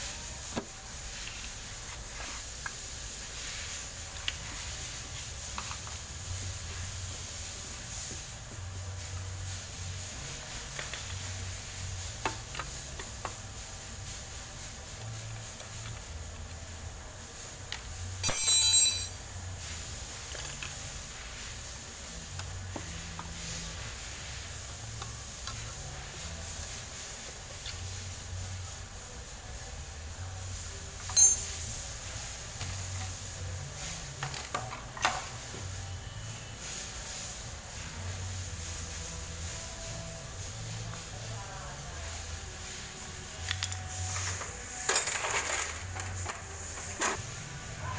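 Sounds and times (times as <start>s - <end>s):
metal tools clinking on engine parts: 17.8s - 19.3s, 31.1s - 31.7s, 43.5s - 47.2s.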